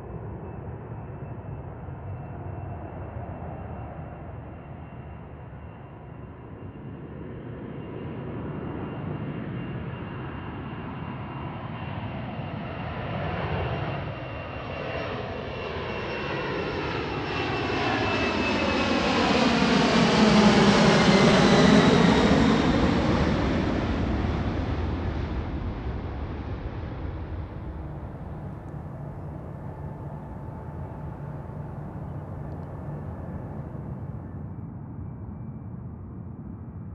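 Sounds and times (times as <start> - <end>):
jet airliner engine noise: 0.0 - 36.9
high turbine whine: 26.8 - 34.3.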